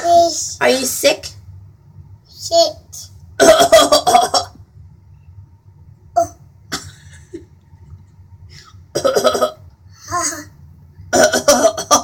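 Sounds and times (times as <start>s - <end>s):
child fake coughing: 3.4s - 4.6s, 8.9s - 9.6s, 11.1s - 12.0s.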